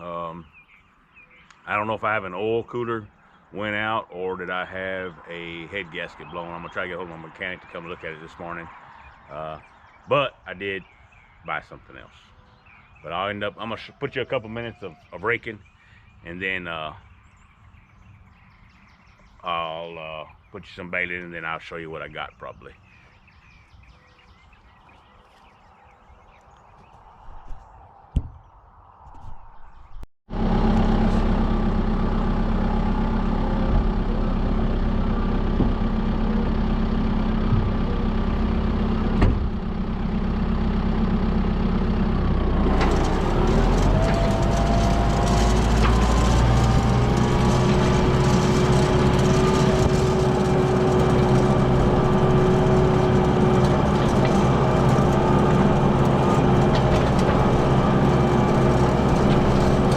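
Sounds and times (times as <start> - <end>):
tractor engine running: 30.3 - 59.9.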